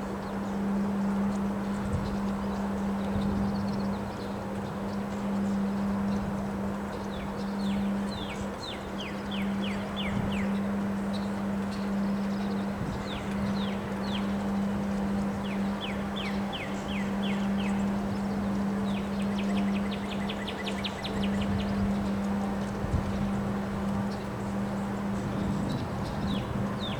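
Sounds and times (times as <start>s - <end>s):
steady low hum: 0.0s - 26.9s
wind blowing in gusts: 12.7s - 15.2s, 21.0s - 26.9s.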